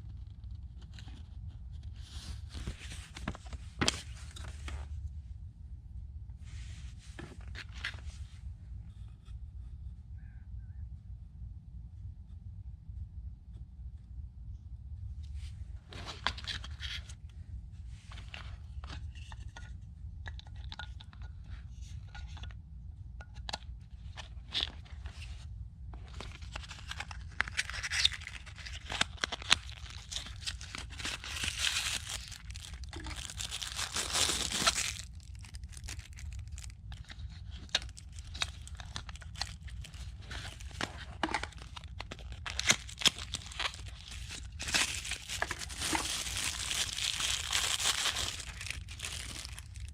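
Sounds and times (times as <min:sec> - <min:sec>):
packaging crinkling and tearing: 0:02.4 - 0:04.6, 0:15.9 - 0:17.0, 0:26.0 - 0:49.9.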